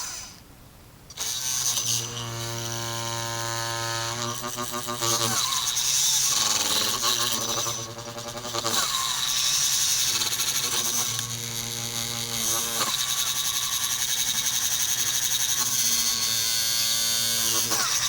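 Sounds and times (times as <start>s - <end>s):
whine of small electric motors: 1.1s - 18.0s.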